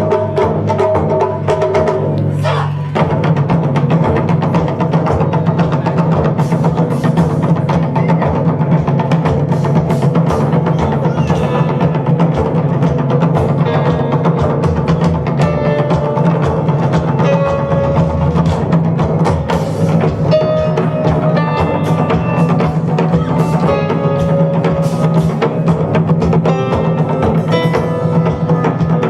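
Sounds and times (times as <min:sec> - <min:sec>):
bass guitar line: 0:00.0 - 0:29.0
drum kit: 0:00.0 - 0:29.0
taiko drums: 0:00.0 - 0:29.0
held keyboard notes: 0:10.9 - 0:29.0.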